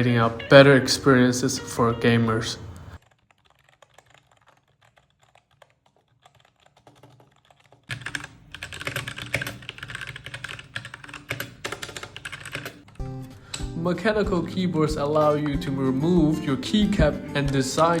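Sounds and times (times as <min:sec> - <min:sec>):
loud mechanical keyboard typing: 0:03.0 - 0:13.0
soft membrane keyboard typing: 0:03.0 - 0:13.0.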